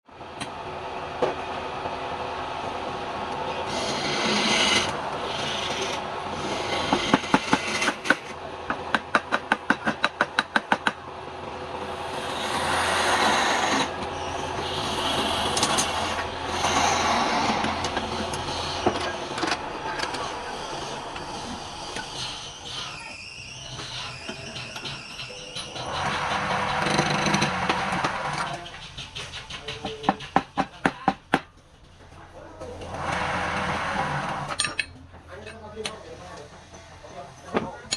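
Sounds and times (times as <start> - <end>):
wood lathe motor humming: 0.5 - 29.3, 32.6 - 34.6
turning tool scraping wood: 3.5 - 10.8, 11.9 - 30.6, 32.8 - 34.6.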